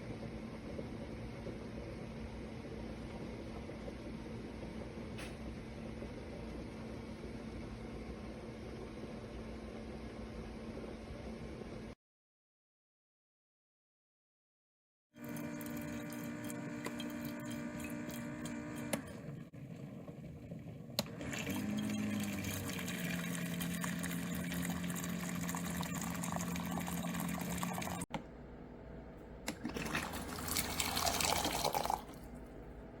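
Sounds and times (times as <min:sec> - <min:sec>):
hot water pouring into a cup: 0:15.2 - 0:18.3, 0:21.1 - 0:28.1, 0:29.5 - 0:32.4
urn humming: 0:15.2 - 0:28.1, 0:29.2 - 0:33.0.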